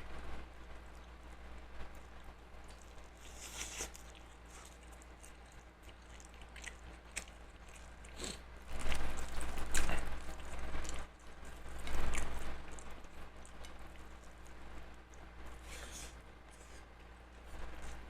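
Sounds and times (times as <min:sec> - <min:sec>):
chewing and biting food: 0:01.9 - 0:15.7.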